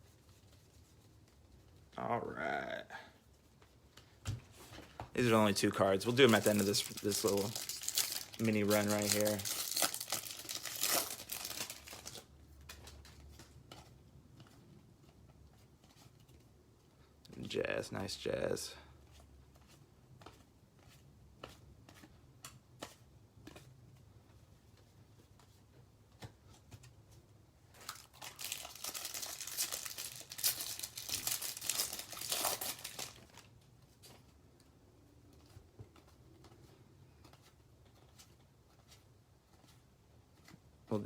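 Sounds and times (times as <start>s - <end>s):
plastic wrapper tearing and crinkling: 5.2s - 12.3s, 27.8s - 33.5s.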